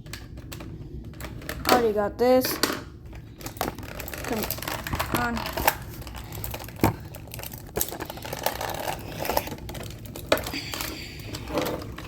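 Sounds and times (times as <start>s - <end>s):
toy packaging clicks and taps: 0.0s - 12.0s
packaging crinkling: 3.2s - 12.0s.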